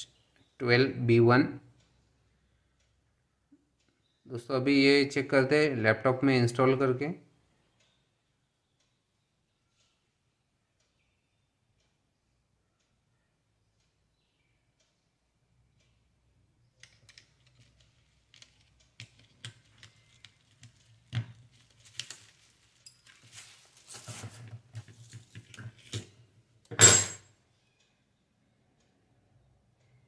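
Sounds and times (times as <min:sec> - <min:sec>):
light clicks and taps: 0:16.8 - 0:23.4
rustling: 0:17.2 - 0:25.8.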